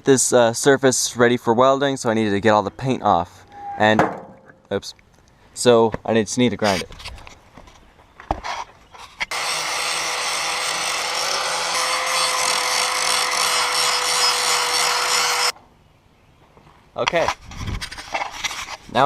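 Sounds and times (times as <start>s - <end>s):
power grinder grinding metal: 9.3s - 15.6s.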